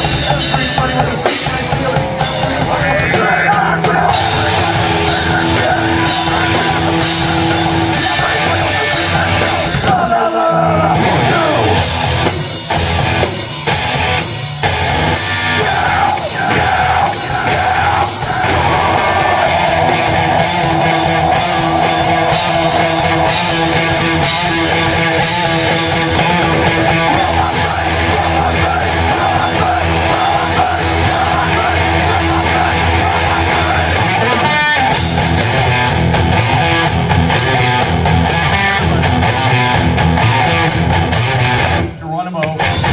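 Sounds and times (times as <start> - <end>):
live rock band playing: 0.0 - 42.9
shouted vocals: 0.0 - 42.9.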